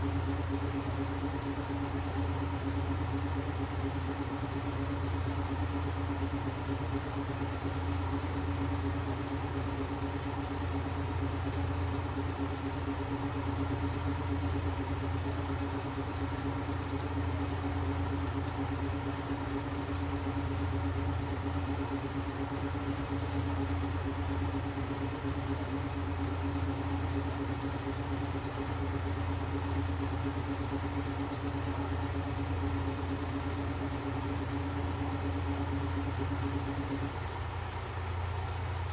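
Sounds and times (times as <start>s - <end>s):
diesel railcar engine idling: 0.0s - 38.9s.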